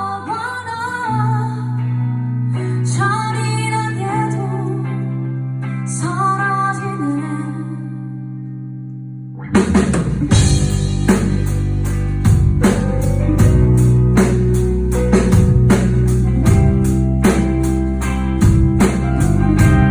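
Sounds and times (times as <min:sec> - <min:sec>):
rock band music: 0:09.4 - 0:19.9.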